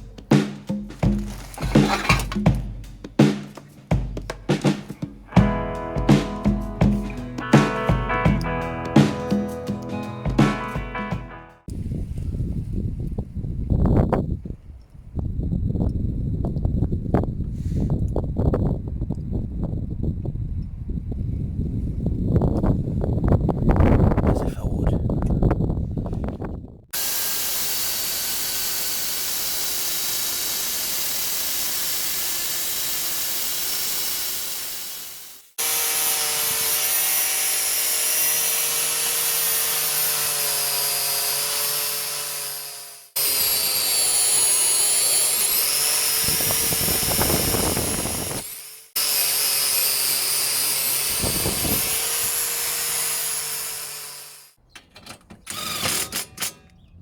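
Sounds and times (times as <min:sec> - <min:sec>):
power tool running: 0:01.0 - 0:02.5, 0:27.0 - 0:54.6, 0:55.5 - 0:56.6
irregular clattering: 0:01.0 - 0:02.6.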